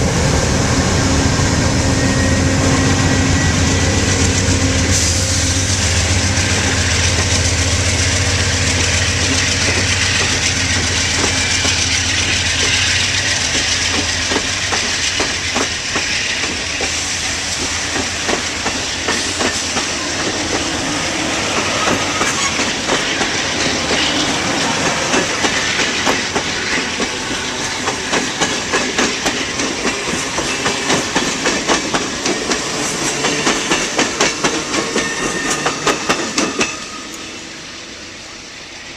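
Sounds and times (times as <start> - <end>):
locomotive engine drone: 0.0 - 28.1
train wheels clicking over rail joints: 3.9 - 37.2.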